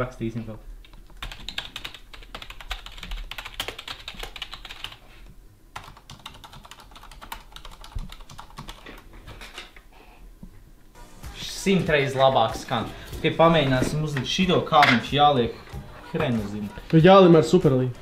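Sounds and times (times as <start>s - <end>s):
mechanical keyboard typing: 1.2s - 5.0s, 5.8s - 9.0s.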